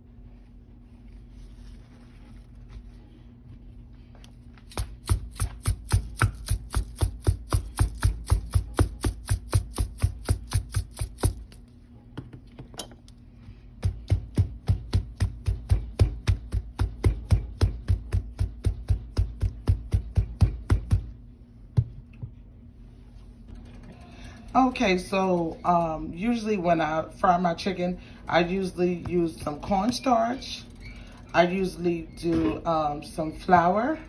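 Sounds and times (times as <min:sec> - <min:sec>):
knife chopping on cutting board: 0:04.7 - 0:11.5, 0:13.8 - 0:21.1.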